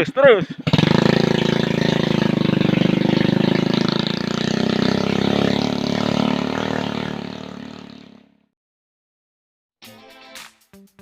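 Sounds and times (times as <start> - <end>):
vehicle engine running: 0.6 - 8.4.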